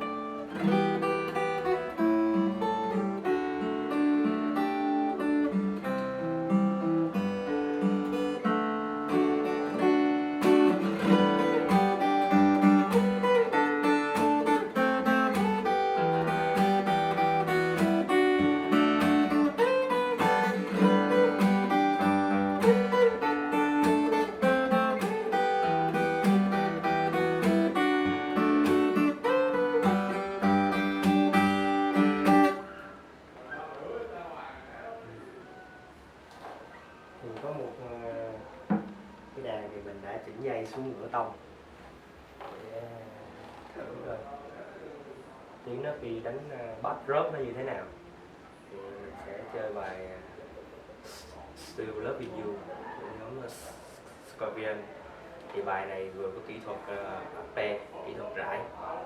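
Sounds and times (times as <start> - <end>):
fingerstyle acoustic guitar: 0.0 - 33.2, 38.4 - 39.4.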